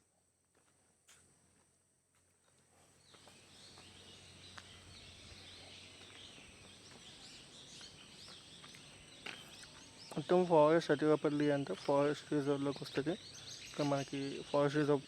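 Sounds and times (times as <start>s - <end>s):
birds chirping: 3.0s - 15.0s.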